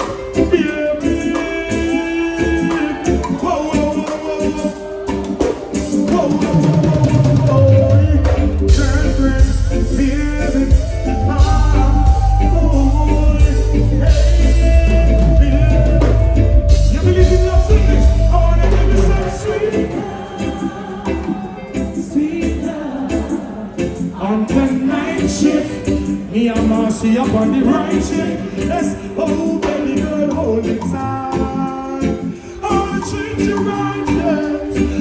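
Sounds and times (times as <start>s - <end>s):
heavy bass line: 0.0s - 22.6s
live band music: 0.0s - 35.0s
person singing: 0.0s - 35.0s.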